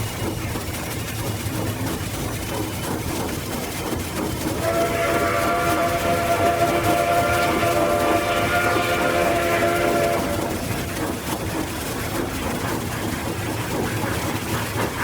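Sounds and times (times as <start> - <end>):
locomotive clattering on rails: 0.0 - 15.0
locomotive whistle chord: 4.5 - 11.2.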